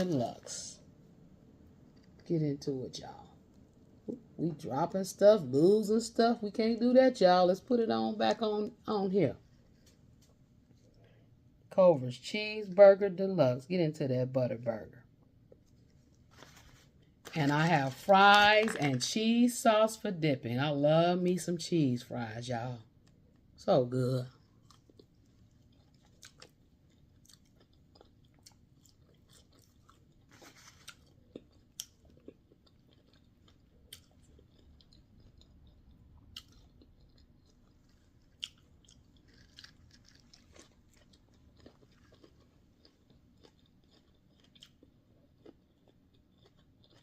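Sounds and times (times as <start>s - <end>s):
chewing mouth clicks: 24.6s - 47.0s.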